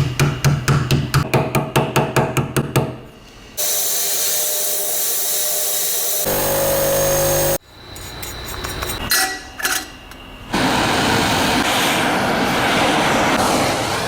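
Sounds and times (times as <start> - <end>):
power tool running: 3.6 - 7.6
loud rushing noise: 10.5 - 14.0.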